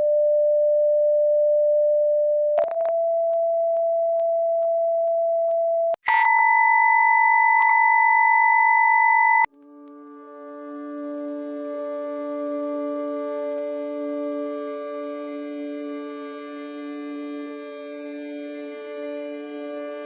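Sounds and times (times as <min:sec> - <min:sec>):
electronic sine-wave tones: 0:00.0 - 0:09.5
click: 0:07.6 - 0:07.8.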